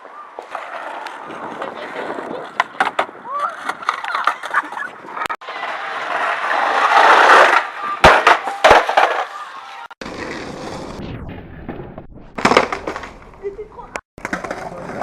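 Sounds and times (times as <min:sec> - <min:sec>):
skateboard wheels rolling on pavement: 0:00.0 - 0:11.7, 0:12.3 - 0:15.0
skateboard clacking on ground: 0:00.3 - 0:09.4, 0:14.2 - 0:15.0.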